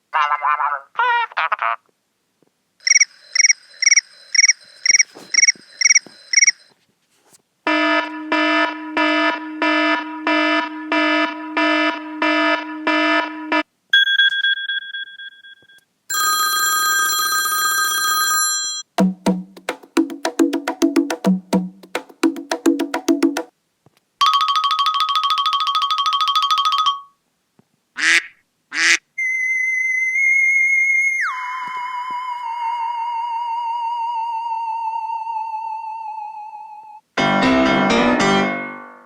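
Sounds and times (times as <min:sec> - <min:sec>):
trilling phone ring: 0:02.8 - 0:06.7, 0:14.0 - 0:18.9, 0:24.2 - 0:27.2.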